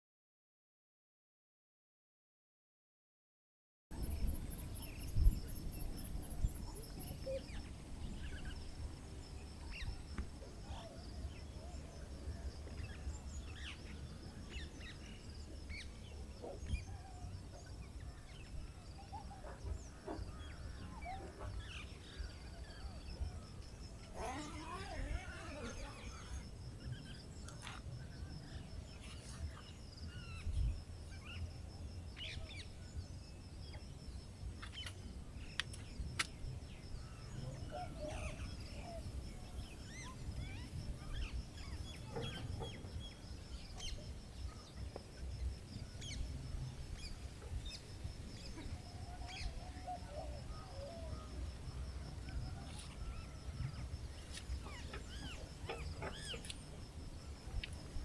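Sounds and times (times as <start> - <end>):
birds calling: 36.7 - 44.9, 47.0 - 57.0.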